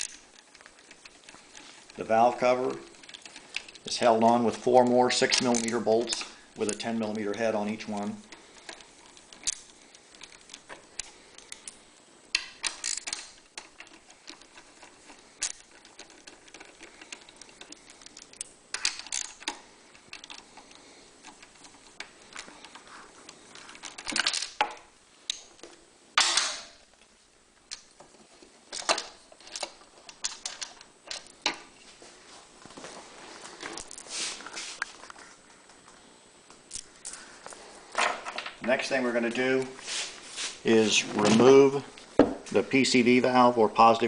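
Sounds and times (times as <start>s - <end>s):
small metal parts clinking: 0.0s - 25.5s, 28.7s - 31.6s
hand ratchet clicking: 7.8s - 22.9s.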